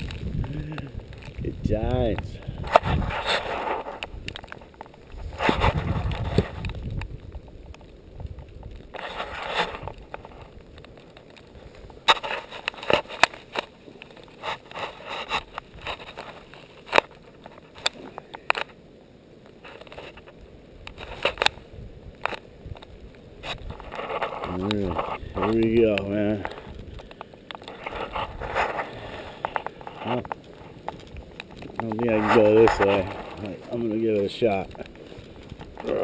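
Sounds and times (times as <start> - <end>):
deep snow crunching: 0.0 - 10.8, 20.0 - 27.0, 27.6 - 36.0.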